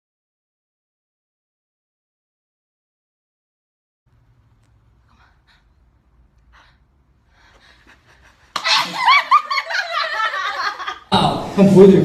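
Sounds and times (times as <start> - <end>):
laughter: 7.7 - 11.1.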